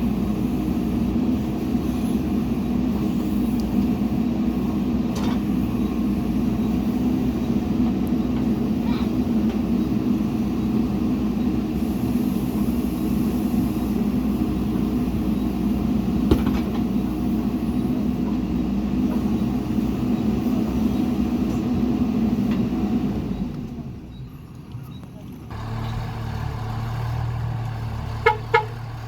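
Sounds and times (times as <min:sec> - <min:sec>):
diesel engine running: 0:00.0 - 0:29.0.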